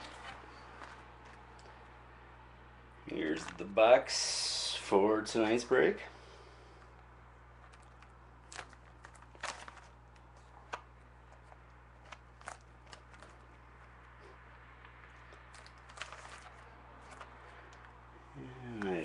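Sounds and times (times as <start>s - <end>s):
steady low hum: 0.0s - 19.0s
card box crinkling: 3.2s - 3.7s, 7.6s - 14.1s, 15.0s - 18.0s.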